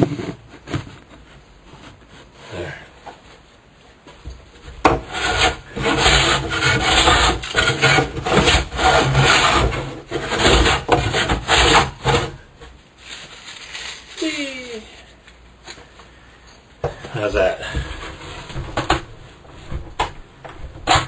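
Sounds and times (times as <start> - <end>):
plane shaving wood: 4.9 - 12.4, 17.1 - 21.0.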